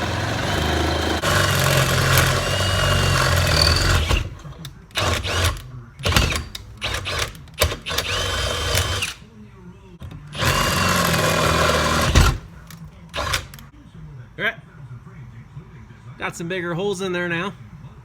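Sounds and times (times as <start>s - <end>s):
electric hand drill boring: 0.0s - 4.3s, 5.0s - 9.2s, 10.4s - 12.5s, 13.2s - 13.6s.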